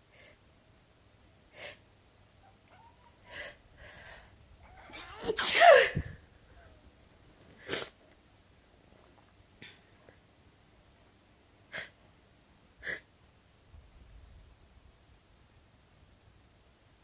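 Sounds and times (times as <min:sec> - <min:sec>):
person sneezing loudly: 0:04.9 - 0:06.2.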